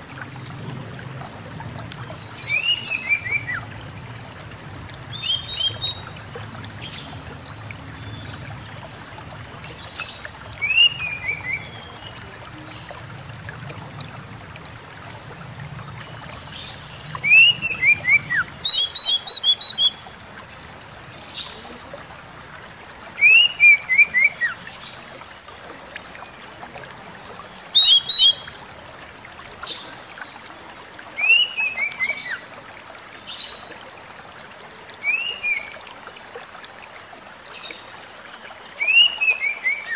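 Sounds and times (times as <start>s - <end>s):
bird whistled song: 2.4s - 3.6s, 5.1s - 6.1s, 10.6s - 12.1s, 17.1s - 20.0s, 23.2s - 24.6s, 27.8s - 28.6s, 31.2s - 32.4s, 35.0s - 35.8s, 38.8s - 39.9s
sharp high bird calls: 17.2s - 20.0s.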